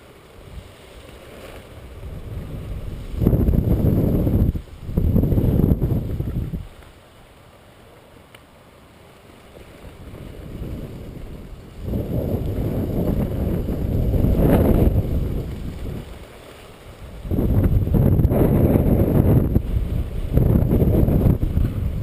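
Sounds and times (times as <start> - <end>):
wind buffeting microphone: 1.7 - 6.8, 9.6 - 22.0.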